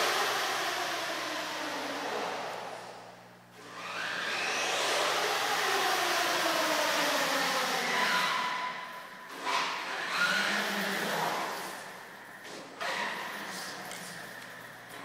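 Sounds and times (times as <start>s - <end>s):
electric motor whining: 3.6s - 12.2s.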